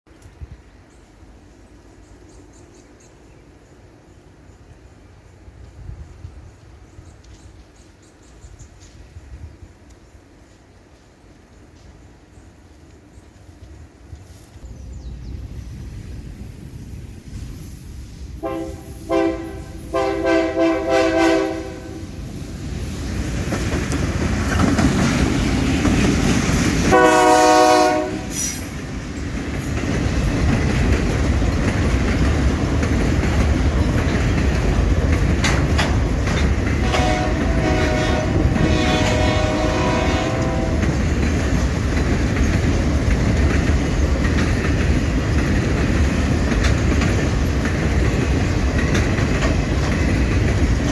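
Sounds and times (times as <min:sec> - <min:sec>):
diesel locomotive rumble: 0:14.1 - 0:50.9
wheels clattering over rail joints: 0:14.6 - 0:50.9
locomotive horn blasts: 0:18.4 - 0:22.3, 0:26.9 - 0:28.5, 0:36.8 - 0:40.9.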